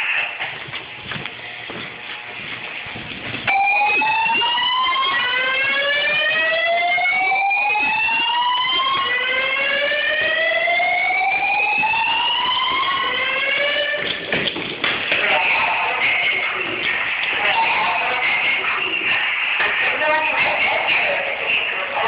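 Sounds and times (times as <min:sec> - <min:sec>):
fire alarm rising whoop: 0:03.5 - 0:14.0.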